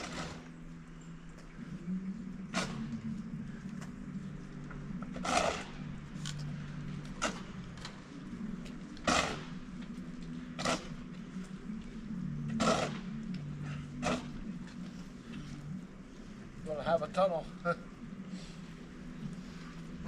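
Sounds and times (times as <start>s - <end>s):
snow shovel scraping snow: 0.0s - 0.5s, 5.2s - 5.8s, 9.1s - 9.5s, 12.6s - 13.0s
steady low hum: 0.0s - 20.0s.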